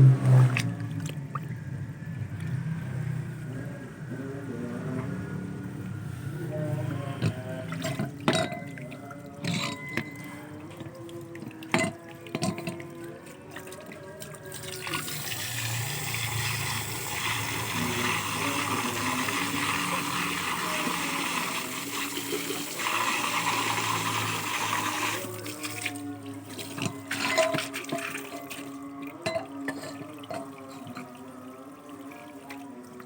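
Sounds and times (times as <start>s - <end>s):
water running: 7.0s - 33.0s.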